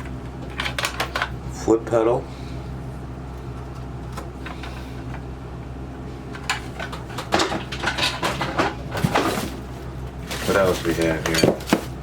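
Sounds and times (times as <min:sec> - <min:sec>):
rustling parts and papers: 0:00.0 - 0:01.4, 0:06.2 - 0:12.0
steady low hum: 0:00.0 - 0:12.0.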